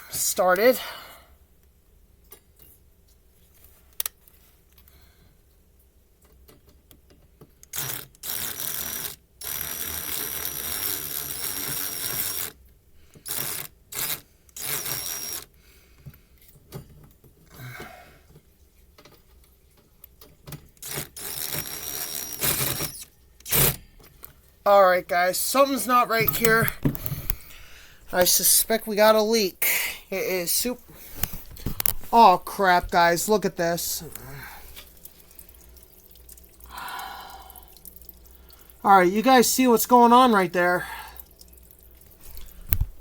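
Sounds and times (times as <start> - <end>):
impact driver driving screws: 7.7 - 12.6, 13.2 - 15.5, 20.8 - 23.8.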